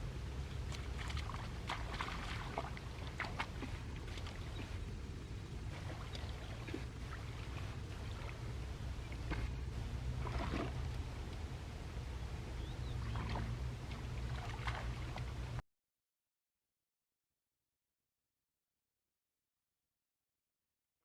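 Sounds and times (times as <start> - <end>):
steady low hum: 0.0 - 15.6
shallow water splashing: 0.3 - 15.6.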